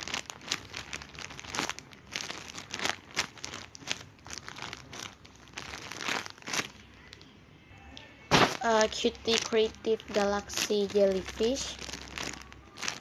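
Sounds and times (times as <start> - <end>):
plastic wrapper crinkling: 0.0 - 7.3, 8.3 - 13.0.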